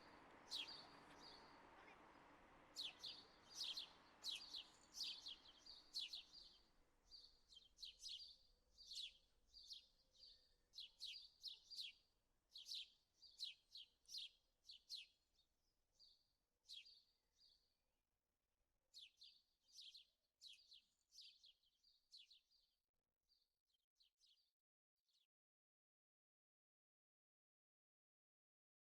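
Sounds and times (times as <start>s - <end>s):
small birds chirping: 0.0s - 15.2s, 16.0s - 17.6s, 19.0s - 22.7s.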